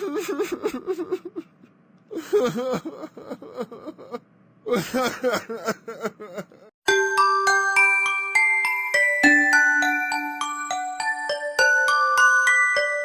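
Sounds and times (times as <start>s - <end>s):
person's wordless vocal sounds: 2.1s - 6.7s.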